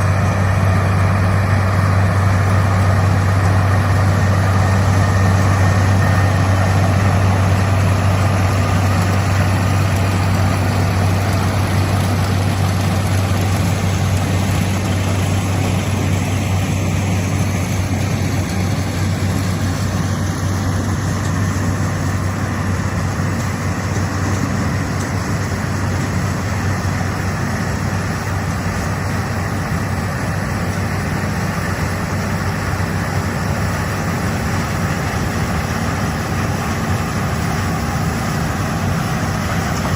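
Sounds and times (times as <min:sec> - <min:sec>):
combine harvester engine hum: 0:00.0 - 0:39.9.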